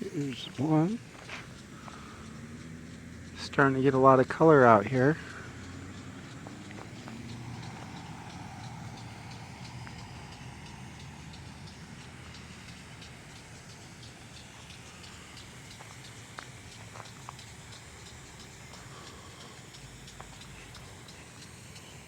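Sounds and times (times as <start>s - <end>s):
rapid high-pitched ticking: 0.0s - 22.0s.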